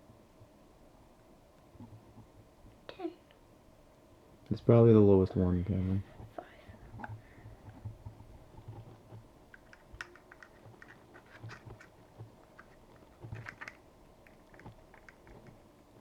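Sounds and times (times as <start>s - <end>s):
small plastic items clicking: 9.5s - 15.6s.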